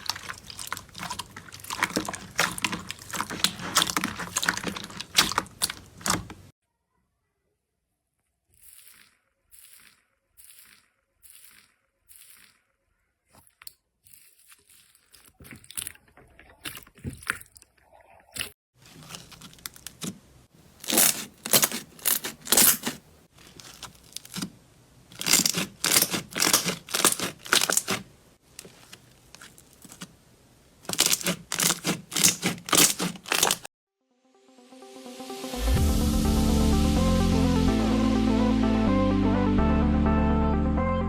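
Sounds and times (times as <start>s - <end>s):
slime crackling and popping: 0.0s - 6.5s, 20.8s - 24.5s, 25.1s - 28.0s, 28.6s - 30.1s, 30.8s - 33.7s.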